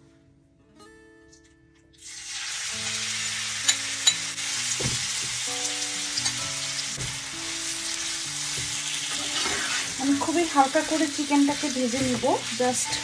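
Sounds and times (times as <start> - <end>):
chicken frying in oil: 2.0 - 7.7, 8.6 - 13.0.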